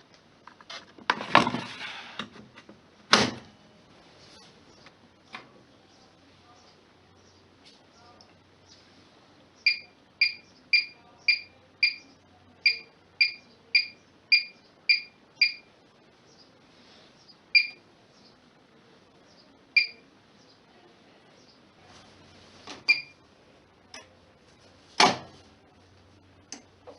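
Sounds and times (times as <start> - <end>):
washing machine short high beeps: 17.6 - 17.8, 22.9 - 23.2.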